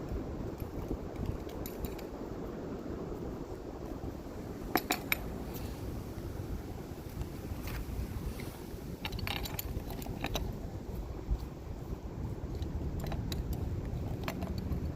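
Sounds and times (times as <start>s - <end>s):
wind rumble on microphone: 0.0s - 14.9s
metal clinking against metal: 9.0s - 10.5s.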